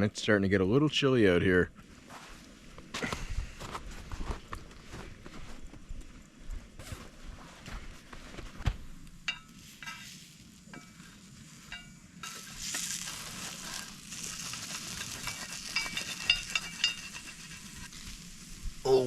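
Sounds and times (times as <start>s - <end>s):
dough sizzling in a pan: 6.5s - 19.0s
sharp crackles: 8.7s - 19.0s.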